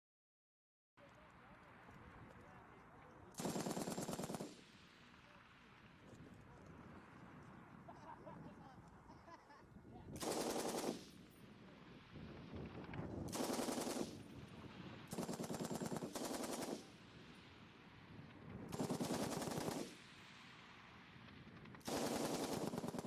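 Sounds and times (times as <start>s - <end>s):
machine gun firing bursts: 3.3s - 4.7s, 10.2s - 11.4s, 13.2s - 14.3s, 15.1s - 17.0s, 18.7s - 20.1s, 21.6s - 23.0s.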